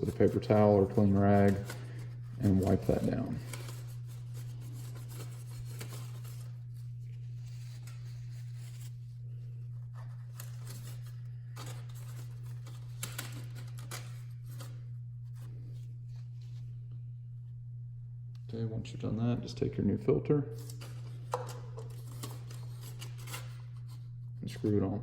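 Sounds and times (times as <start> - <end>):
paper towel rustling and rubbing: 0.0 - 16.9
steady low hum: 0.0 - 25.0.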